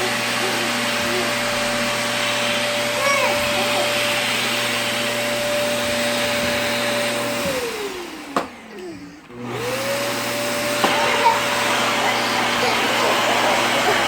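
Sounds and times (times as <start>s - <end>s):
vacuum cleaner motor whining: 0.0s - 14.0s.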